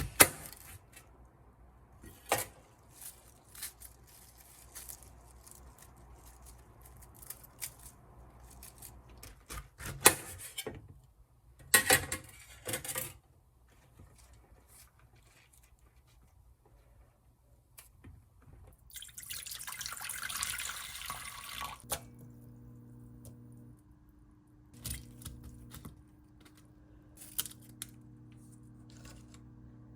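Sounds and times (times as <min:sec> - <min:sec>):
water running from tap: 0:18.9 - 0:23.6
steady low hum: 0:21.8 - 0:29.9.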